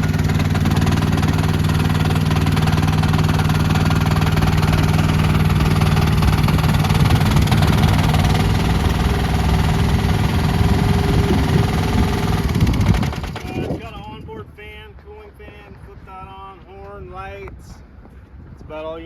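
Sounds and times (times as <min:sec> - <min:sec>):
gas engine running: 0:00.0 - 0:14.1.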